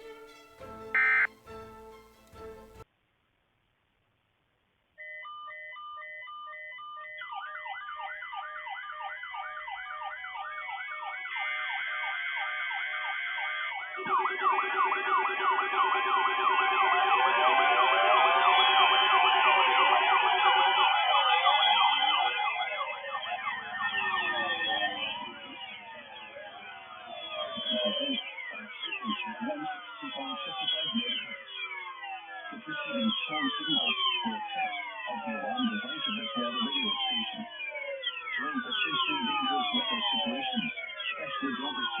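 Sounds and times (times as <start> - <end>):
repeated electronic beeps: 1.0 - 1.3, 5.0 - 42.0
warbling siren tones: 1.0 - 1.3, 5.0 - 42.0.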